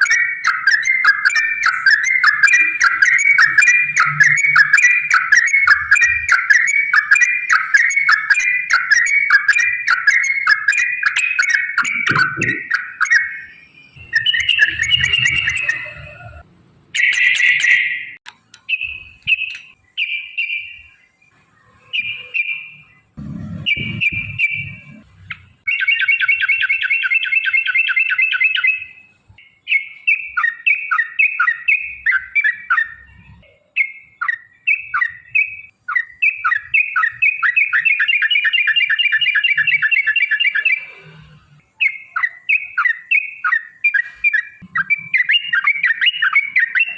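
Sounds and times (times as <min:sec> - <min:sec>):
bird chattering song: 0:00.0 - 0:16.2, 0:17.0 - 0:41.0, 0:41.6 - 0:46.9.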